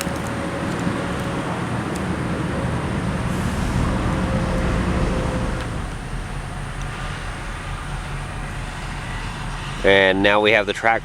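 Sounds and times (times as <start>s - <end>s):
heavy engine humming: 0.0s - 11.0s.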